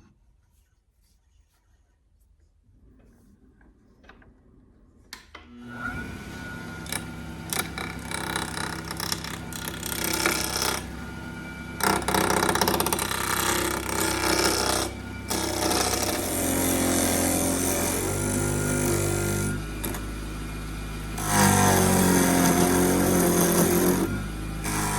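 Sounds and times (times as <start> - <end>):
wood lathe motor running: 5.6 - 24.9
turning tool cutting wood: 5.8 - 24.9.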